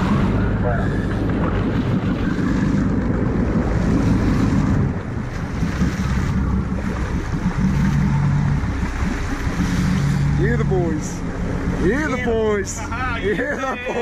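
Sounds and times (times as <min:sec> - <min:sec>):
wind buffeting microphone: 0:00.0 - 0:13.5
boat engine running: 0:00.0 - 0:14.0
water rushing past hull: 0:00.0 - 0:14.0.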